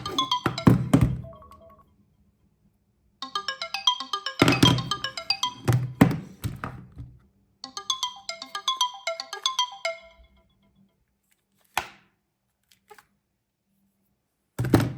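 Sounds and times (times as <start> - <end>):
smartphone alarm chime melody: 0.0 - 1.9, 3.2 - 6.2, 7.6 - 10.5.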